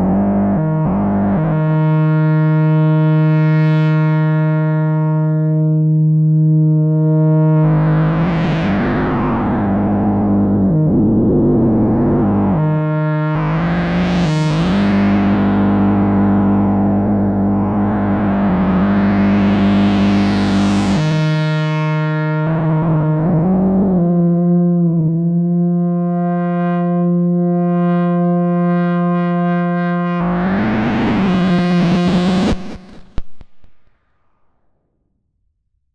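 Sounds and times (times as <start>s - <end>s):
electronic buzzing tone: 0.0s - 34.4s.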